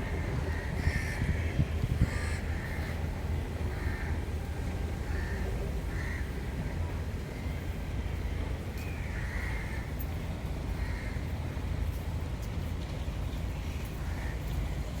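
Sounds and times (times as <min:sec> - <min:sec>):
crows cawing: 0:03.7 - 0:04.2.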